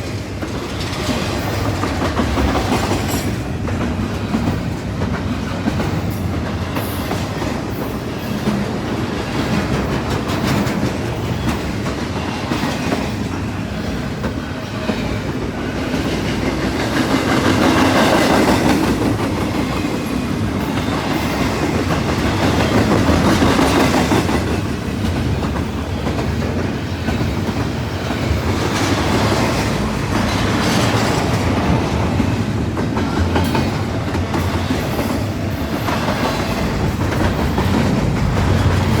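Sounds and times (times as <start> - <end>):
freight train wheels rumbling: 0.0 - 39.0.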